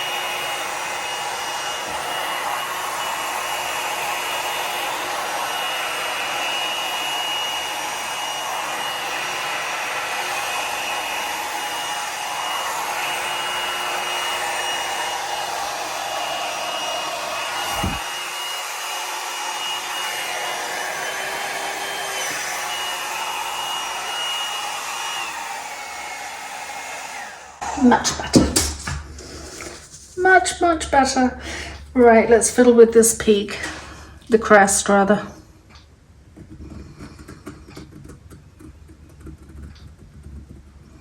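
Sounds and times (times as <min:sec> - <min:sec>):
electric blower whining: 0:00.0 - 0:29.0.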